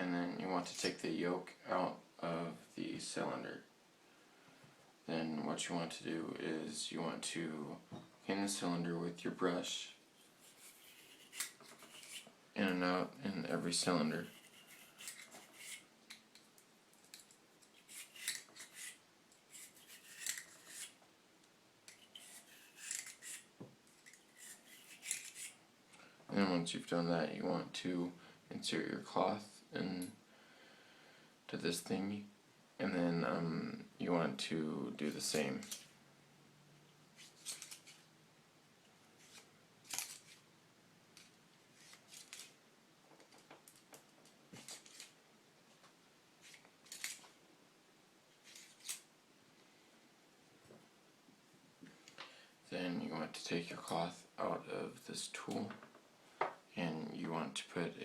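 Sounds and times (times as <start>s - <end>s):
brush scrubbing metal: 10.2s - 12.3s, 14.0s - 15.9s
cleaning patch scraping revolver cylinder: 10.2s - 12.3s, 14.1s - 16.2s, 17.1s - 21.0s, 21.9s - 25.6s.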